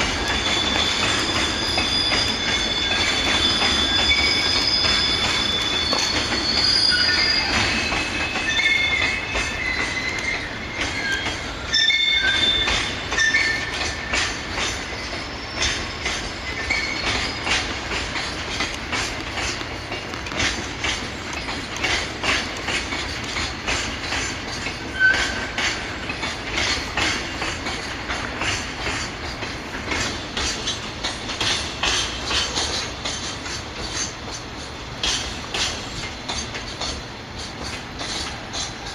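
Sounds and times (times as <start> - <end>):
high wheel squeal: 0.0 - 18.6, 23.8 - 30.8
train wheels clacking over rail joints: 0.0 - 38.9.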